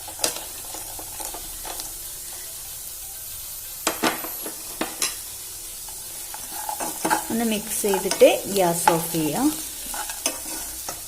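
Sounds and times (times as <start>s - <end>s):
food sizzling in a frying pan: 0.0s - 11.0s
spoon clattering against pan: 7.9s - 9.2s.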